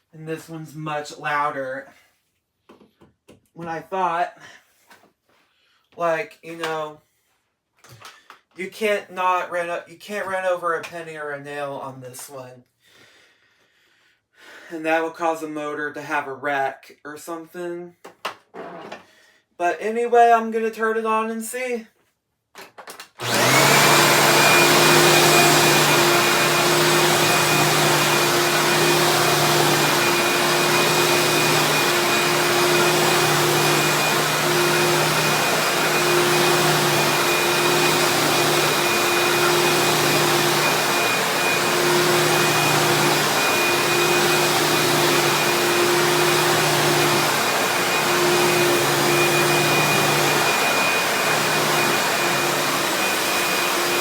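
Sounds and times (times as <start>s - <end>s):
vacuum cleaner running: 23.2s - 54.0s.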